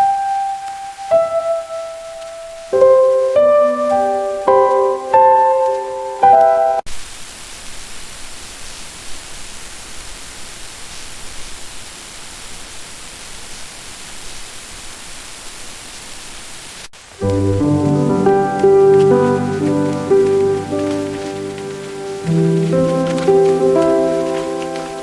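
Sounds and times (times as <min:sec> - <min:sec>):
soft piano music: 0:00.0 - 0:06.9, 0:17.2 - 0:25.0
rain hissing: 0:00.0 - 0:25.0.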